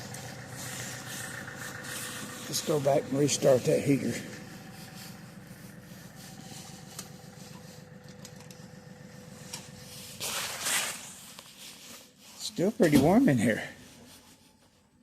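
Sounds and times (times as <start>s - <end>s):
tractor engine idling: 0.0s - 14.6s
short rustling scrape: 0.0s - 15.0s.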